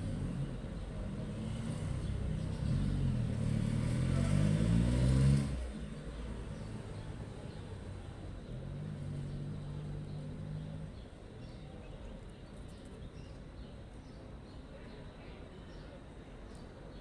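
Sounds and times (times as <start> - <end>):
engine revving: 1.2 - 5.7.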